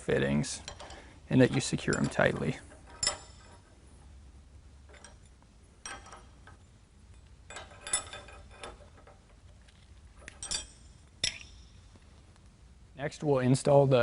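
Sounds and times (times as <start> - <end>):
metal tools clinking: 0.2 - 3.8, 4.9 - 9.5, 10.2 - 11.6.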